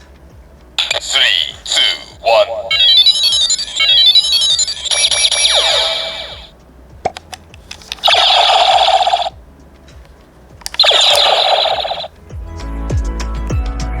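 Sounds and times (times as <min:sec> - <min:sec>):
electronic toy beeps: 0:00.8 - 0:06.5, 0:08.0 - 0:09.4, 0:10.8 - 0:12.1.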